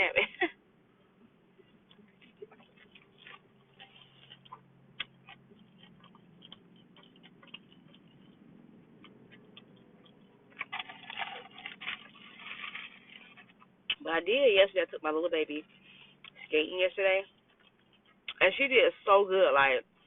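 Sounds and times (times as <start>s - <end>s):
crunching and smacking chewing: 1.7s - 14.0s, 15.7s - 16.5s, 17.2s - 18.4s.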